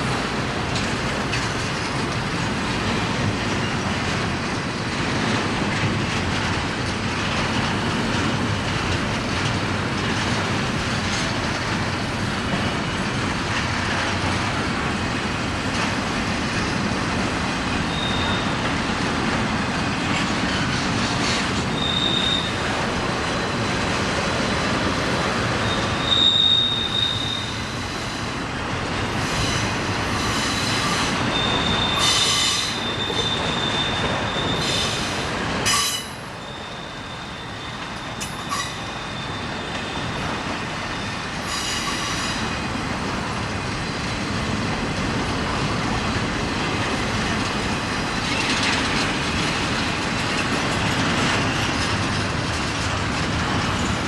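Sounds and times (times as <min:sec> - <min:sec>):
railroad cars rolling: 0:00.0 - 0:54.0
high-pitched wheel squeal: 0:21.7 - 0:22.6, 0:25.5 - 0:28.2, 0:29.3 - 0:42.5.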